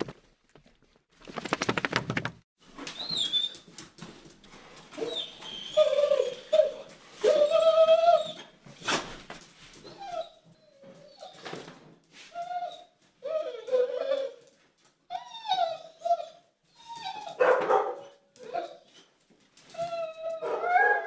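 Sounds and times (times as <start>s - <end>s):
dog whining and whimpering: 2.9s - 3.7s, 5.0s - 8.9s, 9.8s - 11.7s, 12.3s - 17.4s, 18.1s - 19.1s, 19.7s - 21.0s.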